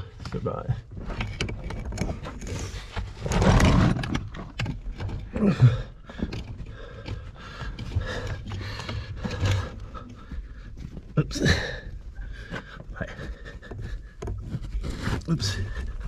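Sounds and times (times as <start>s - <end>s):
clothing scraping on rock: 0.4s - 5.6s, 14.0s - 16.0s.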